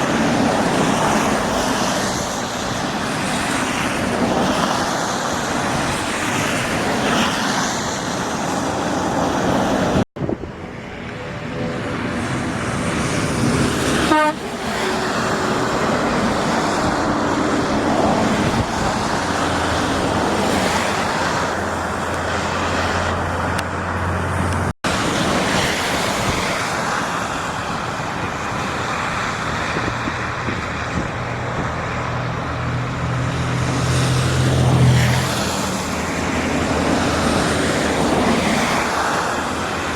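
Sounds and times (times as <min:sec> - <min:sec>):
heavy vehicles moving: 0:00.0 - 0:39.9
vehicle horn: 0:13.9 - 0:15.7.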